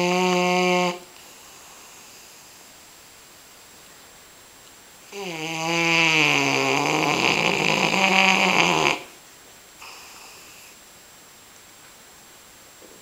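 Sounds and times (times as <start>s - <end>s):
dog snoring: 0.0s - 2.6s, 5.0s - 9.2s, 9.8s - 10.8s.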